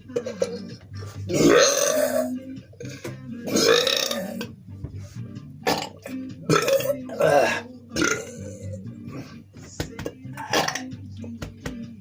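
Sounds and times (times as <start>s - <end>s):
man belching: 0.0s - 4.6s, 5.6s - 9.3s, 10.3s - 11.0s.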